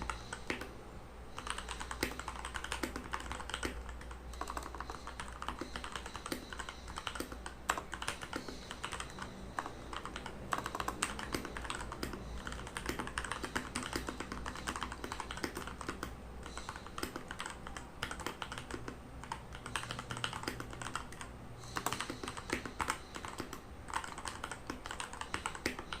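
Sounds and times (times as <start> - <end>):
mechanical keyboard typing: 0.0 - 0.7, 1.3 - 26.0.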